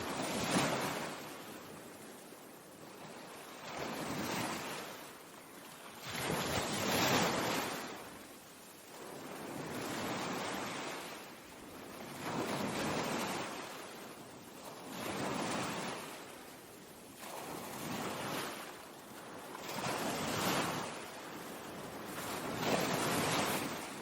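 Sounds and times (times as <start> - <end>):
ocean waves washing in: 17.0 - 24.0.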